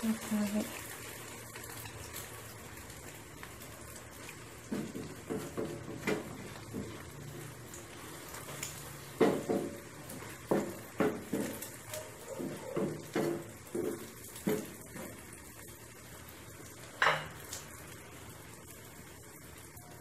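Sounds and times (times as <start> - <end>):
faint frying in oil: 0.0 - 20.0.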